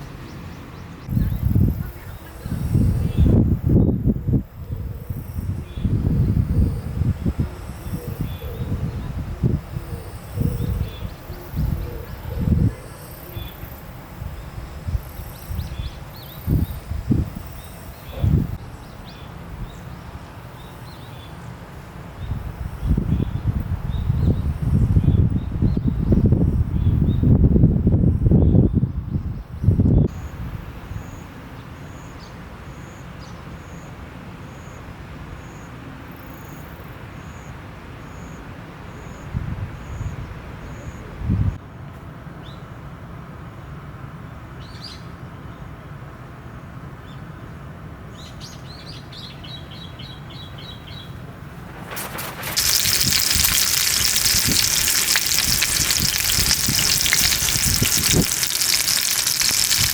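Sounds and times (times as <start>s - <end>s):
insect buzz: 51.9s - 59.9s.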